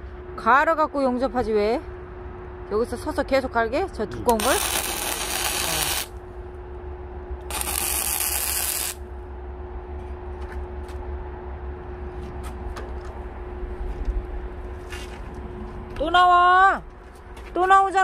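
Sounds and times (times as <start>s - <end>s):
grinder motor humming: 4.3s - 6.2s, 7.4s - 9.0s
grinder grinding steel: 4.4s - 6.1s, 7.5s - 9.0s.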